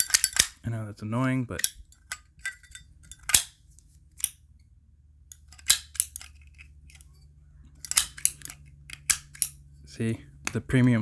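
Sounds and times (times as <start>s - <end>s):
metal lighter lid clicking: 0.0s - 0.5s, 7.8s - 9.6s.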